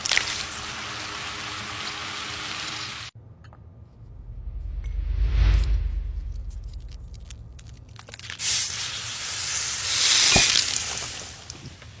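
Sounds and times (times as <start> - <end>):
loud hiss: 8.4 - 11.6.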